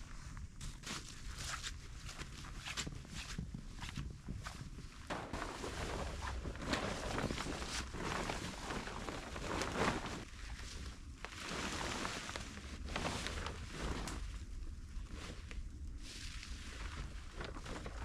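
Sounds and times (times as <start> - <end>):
tarp rustling: 5.0 - 18.0
crunching in snow: 5.1 - 14.3.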